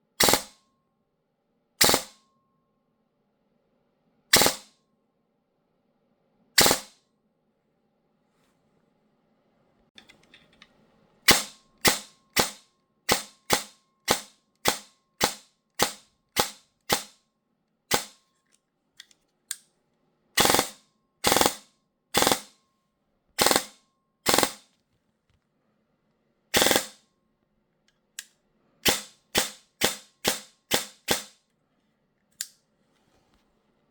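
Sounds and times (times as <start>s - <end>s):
airsoft gun shots: 26.6s - 26.9s, 28.8s - 31.3s.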